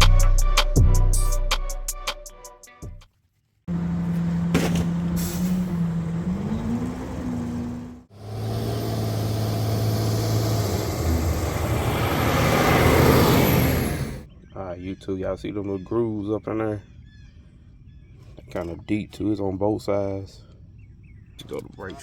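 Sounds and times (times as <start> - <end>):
motor vehicle humming: 3.7 - 14.3.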